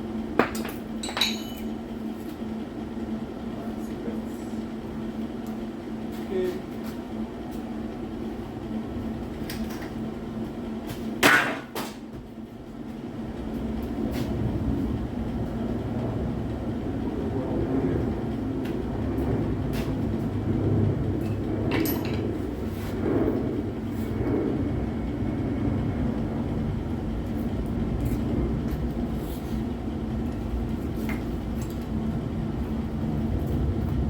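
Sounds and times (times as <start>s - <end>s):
low hum: 12.4s - 34.0s
low rumbling: 13.1s - 34.0s.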